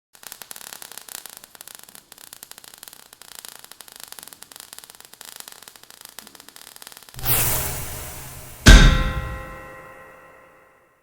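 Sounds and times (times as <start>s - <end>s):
crackling static: 0.1s - 8.1s.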